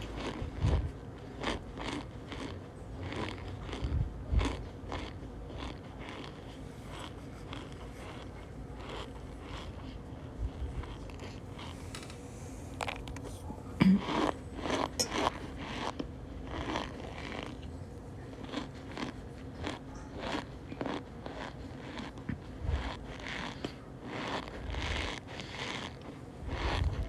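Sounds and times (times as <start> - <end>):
cornstarch crunching and squeaking: 1.2 - 10.0, 14.1 - 17.7, 18.3 - 27.0.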